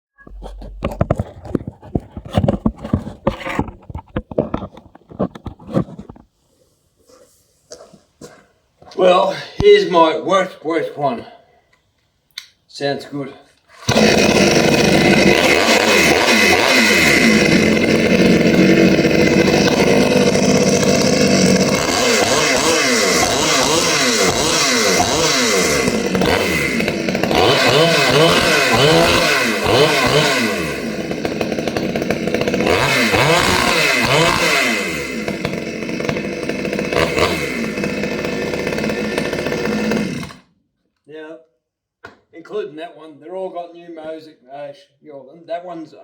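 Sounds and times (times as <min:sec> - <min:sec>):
chainsaw engine popping unevenly: 0:00.2 - 0:06.2, 0:13.8 - 0:40.4.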